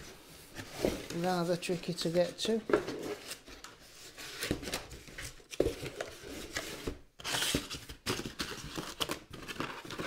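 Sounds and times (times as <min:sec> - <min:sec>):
rummaging through cardboard box: 0:00.0 - 0:10.0.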